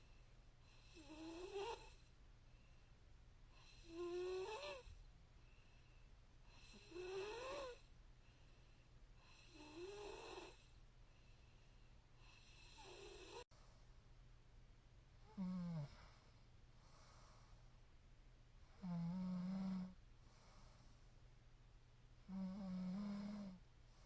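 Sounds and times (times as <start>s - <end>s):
woman snoring: 0.7s - 2.0s, 3.6s - 5.0s, 6.5s - 7.8s, 9.2s - 10.7s, 12.2s - 13.4s, 15.3s - 16.2s, 18.8s - 20.0s, 22.3s - 23.6s.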